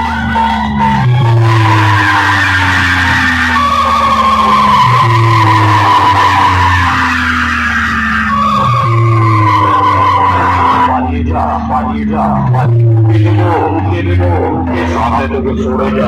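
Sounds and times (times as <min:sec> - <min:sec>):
steady deep bass: 0:00.0 - 0:16.0.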